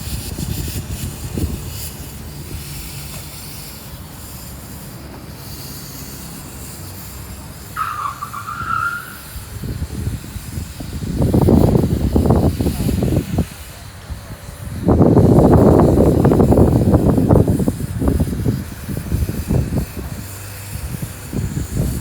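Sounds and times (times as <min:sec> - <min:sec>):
miniature train rumbling: 0:00.0 - 0:22.0.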